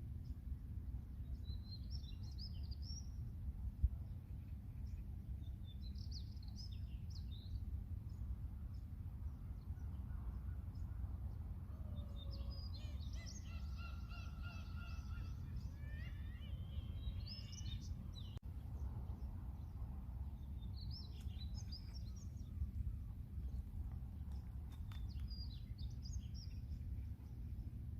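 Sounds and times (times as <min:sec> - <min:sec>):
steady low rumble: 0:00.0 - 0:27.9
seagulls and birds calling: 0:11.6 - 0:18.4.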